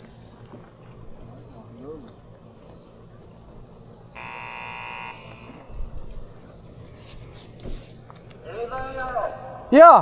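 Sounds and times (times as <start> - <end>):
electronic buzzer: 4.1 - 6.5
clicks: 4.8 - 9.5.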